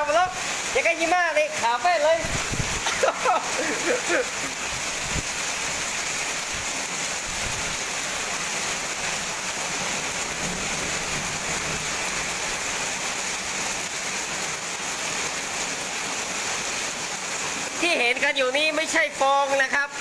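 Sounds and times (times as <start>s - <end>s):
hail and rain pelting down: 0.0s - 20.0s.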